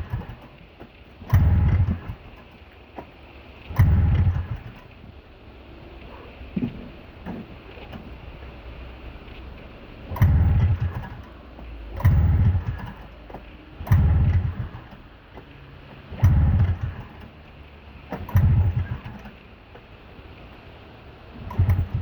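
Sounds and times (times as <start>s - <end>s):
snowmobile engine pull-start: 0.0s - 0.6s, 1.2s - 2.6s, 3.6s - 5.0s, 10.0s - 17.4s, 18.0s - 19.5s, 21.3s - 22.0s.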